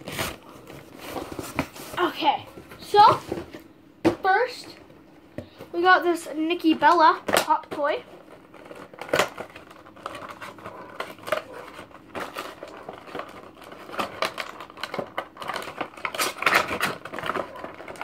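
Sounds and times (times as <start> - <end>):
packaging clicks and rustles: 6.7 - 18.0.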